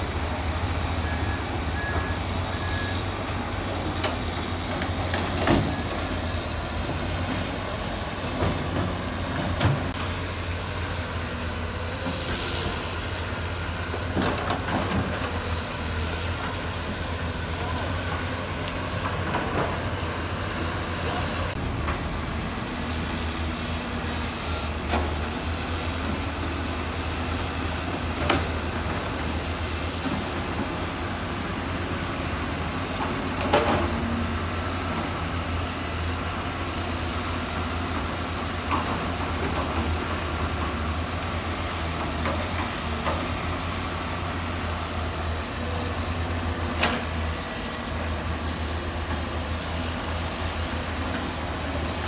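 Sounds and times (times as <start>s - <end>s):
diesel machinery engine hum: 0.0s - 52.0s.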